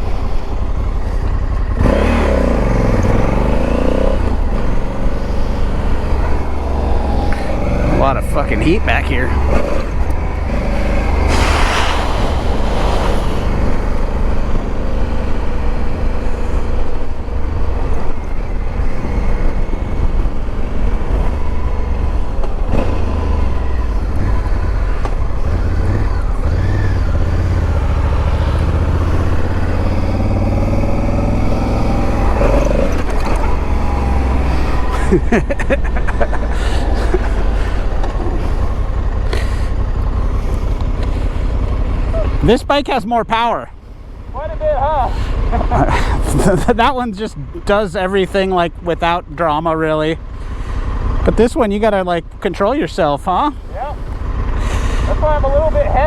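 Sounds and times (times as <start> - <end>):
motorcycle engine running: 0.0 - 56.0
wind rumble on microphone: 9.4 - 15.7.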